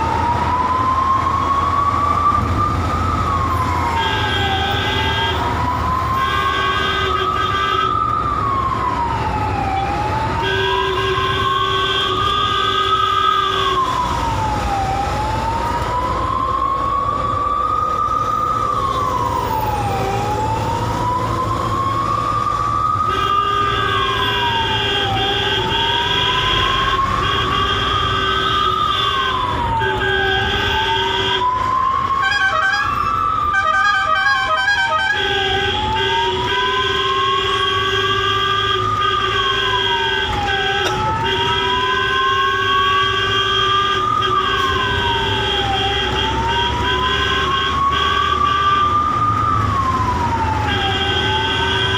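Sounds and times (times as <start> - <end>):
ambulance siren wailing: 0.0 - 51.9
road and engine rumble: 0.0 - 51.9
steady higher siren tone: 0.0 - 51.9.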